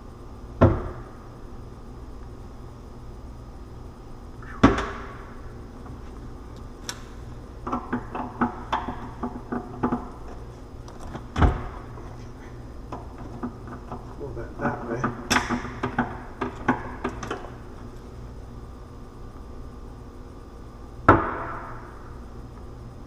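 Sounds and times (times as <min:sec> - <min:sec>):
cabinet doors knocking shut: 0:00.6 - 0:01.0.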